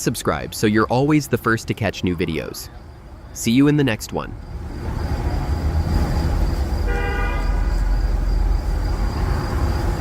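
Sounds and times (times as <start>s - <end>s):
heavy vehicle rumble: 4.2s - 10.0s
short horn toot: 6.9s - 7.7s.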